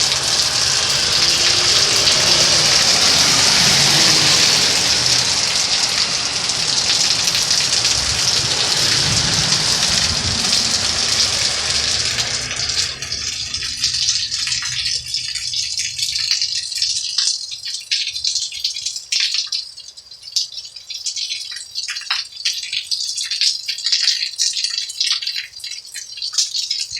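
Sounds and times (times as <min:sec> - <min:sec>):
heavy rain: 0:00.0 - 0:17.4
drops pattering and ticking: 0:00.0 - 0:20.4.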